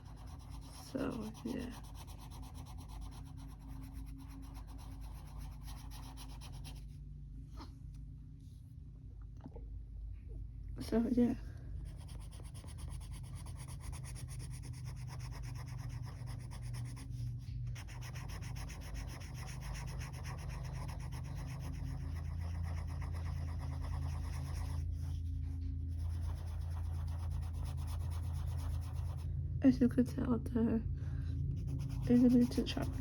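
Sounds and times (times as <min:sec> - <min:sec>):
coloured pencil scratching paper: 0:00.0 - 0:06.9, 0:11.8 - 0:29.2, 0:31.6 - 0:33.0.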